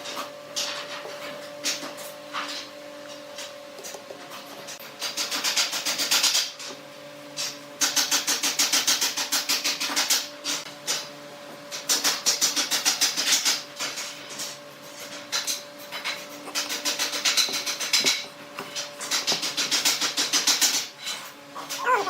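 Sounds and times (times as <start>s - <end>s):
hand tool scraping wood: 11.7s - 21.4s.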